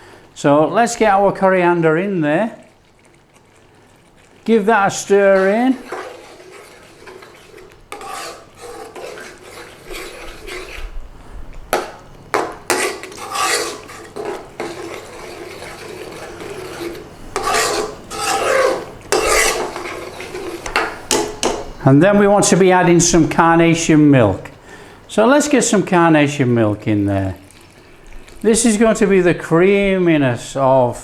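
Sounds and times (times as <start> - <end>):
utensil scraping a pan: 2.3 - 11.0, 11.7 - 21.8, 25.2 - 29.7.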